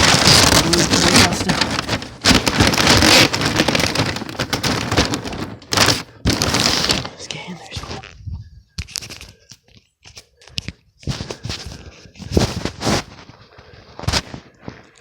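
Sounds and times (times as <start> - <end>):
paper and box packaging crackling: 0.0 - 8.2, 8.8 - 15.0.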